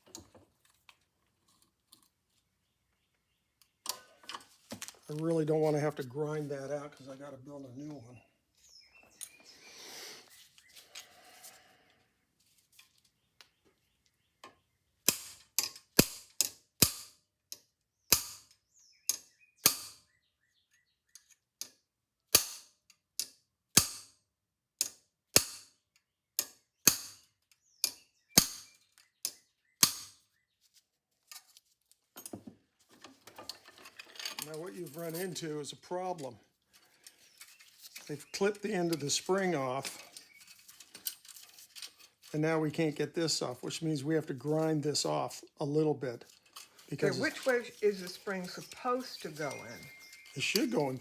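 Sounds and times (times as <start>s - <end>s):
sharp metal taps: 14.4s - 20.1s.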